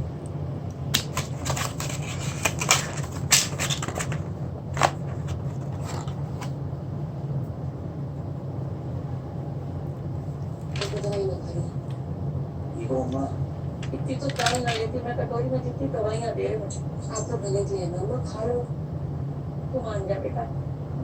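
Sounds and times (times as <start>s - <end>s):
steady low hum: 0.0s - 21.0s
clicks from handling packaging: 1.0s - 4.2s.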